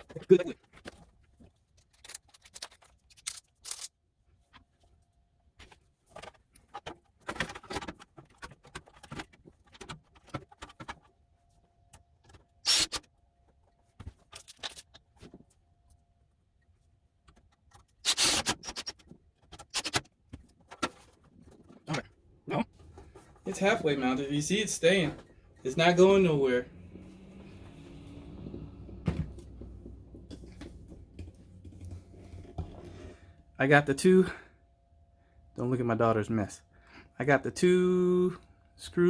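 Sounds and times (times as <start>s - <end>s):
metal parts clicking and rattling: 1.7s - 4.0s, 14.2s - 15.0s.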